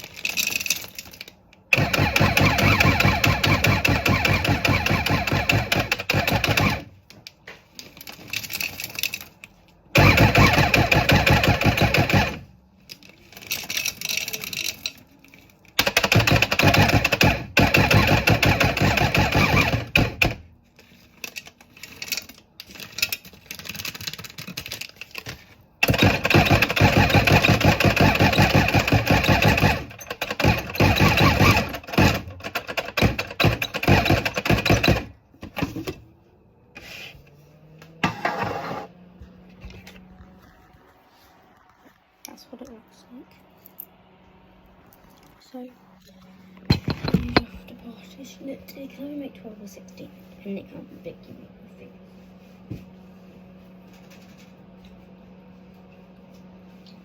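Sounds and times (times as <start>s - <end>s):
food processor motor running: 1.7s - 6.9s, 10.0s - 12.4s, 15.8s - 20.3s, 25.8s - 35.1s.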